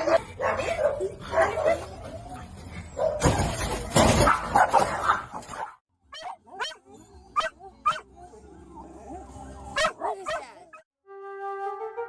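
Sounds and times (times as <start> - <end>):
dog barking and yipping: 0.0 - 2.1, 2.9 - 8.1, 9.7 - 10.8.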